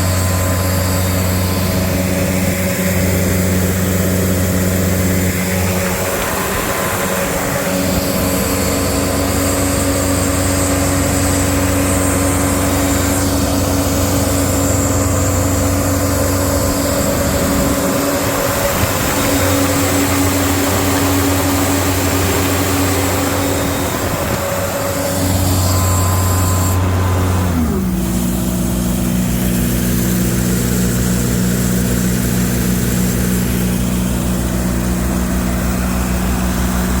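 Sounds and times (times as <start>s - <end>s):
air compressor diesel engine running: 0.0s - 37.0s.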